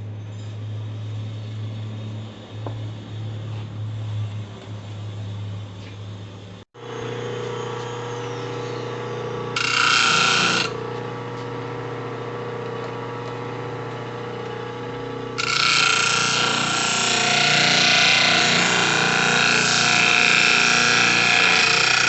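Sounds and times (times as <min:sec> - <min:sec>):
drill press motor humming: 0:06.8 - 0:22.0
harsh grinding noise: 0:06.8 - 0:22.0.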